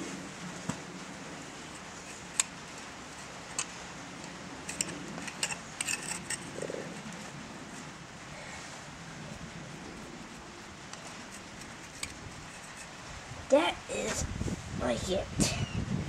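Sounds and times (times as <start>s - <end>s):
steady background hiss: 0.0s - 16.0s
hoof pick scraping hoof: 4.7s - 7.3s, 9.8s - 13.0s.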